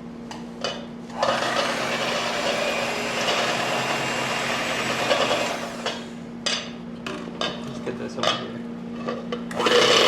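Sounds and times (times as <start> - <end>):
electric blender whirring: 1.1 - 6.2, 9.5 - 10.0.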